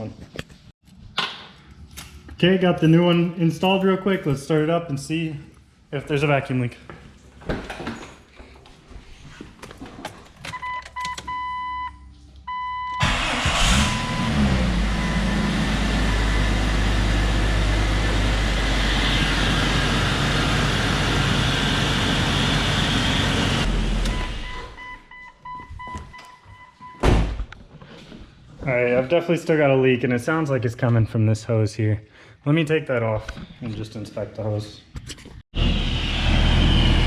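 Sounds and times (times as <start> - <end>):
car engine cranking and idling: 13.0 - 24.5
thump: 27.0 - 27.5.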